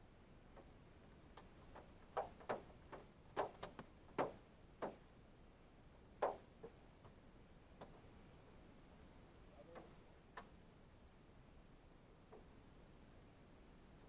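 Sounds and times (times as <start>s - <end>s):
faint steady hiss: 0.0s - 14.0s
raindrops tapping on car roof: 1.4s - 5.0s.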